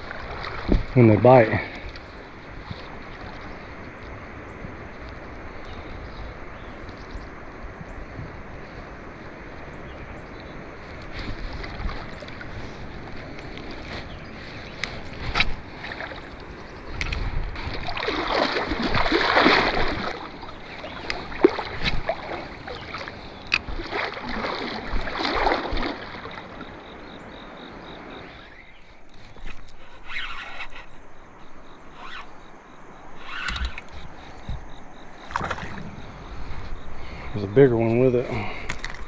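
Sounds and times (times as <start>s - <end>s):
rushing splashy water: 0.0s - 3.6s, 10.9s - 28.3s, 35.2s - 36.0s
moving water: 0.0s - 39.0s.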